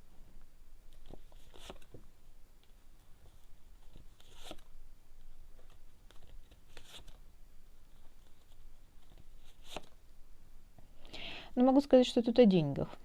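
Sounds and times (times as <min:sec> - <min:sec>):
cards being shuffled: 0:00.9 - 0:02.0, 0:03.2 - 0:04.7, 0:05.3 - 0:07.2, 0:07.9 - 0:10.0.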